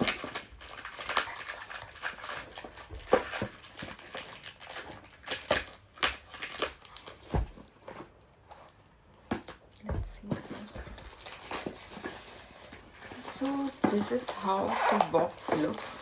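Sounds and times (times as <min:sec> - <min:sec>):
packaging crinkling: 0:00.0 - 0:08.8, 0:10.2 - 0:16.0.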